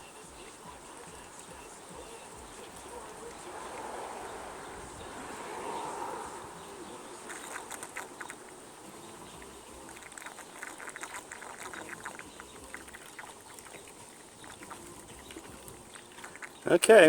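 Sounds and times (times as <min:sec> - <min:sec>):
faint water splashes and drips: 0:00.0 - 0:17.0.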